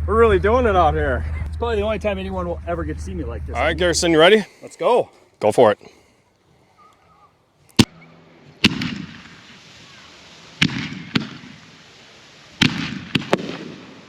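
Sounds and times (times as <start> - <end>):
fireworks bangs with echo: 8.6 - 14.0.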